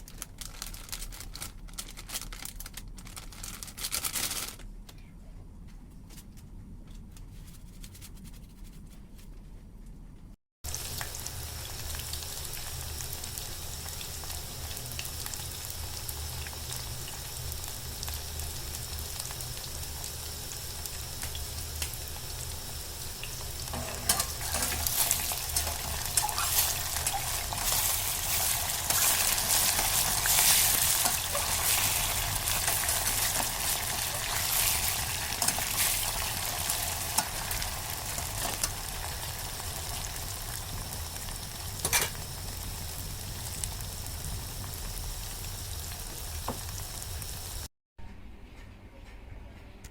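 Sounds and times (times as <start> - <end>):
vegetables sizzling in hot oil: 10.7 - 47.7.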